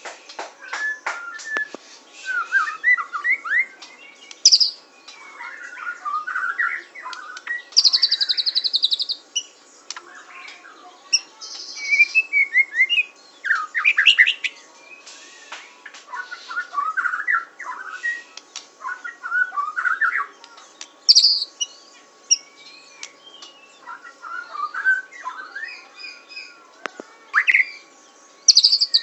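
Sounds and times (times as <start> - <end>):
bird singing whistled phrases: 0.6 - 10.4, 11.1 - 20.4, 21.0 - 26.6, 27.3 - 29.0.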